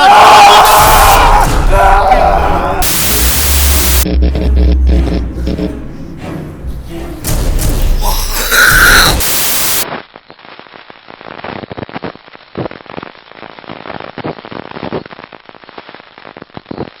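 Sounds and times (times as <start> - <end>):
loud burst of hiss: 2.8 - 4.0, 8.0 - 9.9
crackling static: 2.8 - 4.2, 9.0 - 17.0.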